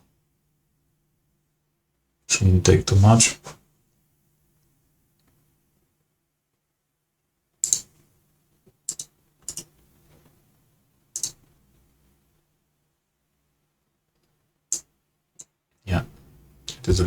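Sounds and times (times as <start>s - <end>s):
computer mouse clicks: 7.6s - 8.0s, 8.8s - 9.8s, 11.1s - 11.5s, 14.2s - 15.5s
faint low hum: 10.5s - 17.0s.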